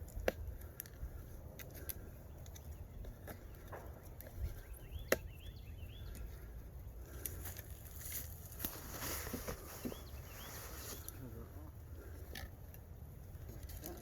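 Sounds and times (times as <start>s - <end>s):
bird chirping: 1.3s - 7.2s, 9.2s - 11.7s.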